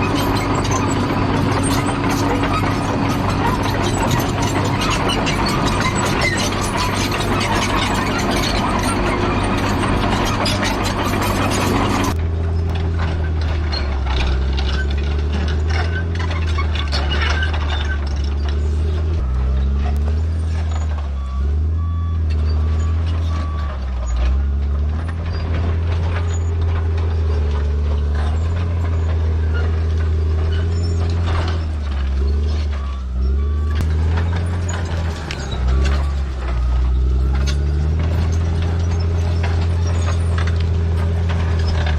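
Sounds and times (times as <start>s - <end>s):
clanking and knocking: 0.0s - 21.3s, 22.2s - 33.1s, 33.8s - 41.9s
bulldozer engine under load: 0.0s - 41.9s
reversing alarm beeping: 18.4s - 25.4s, 30.8s - 40.6s.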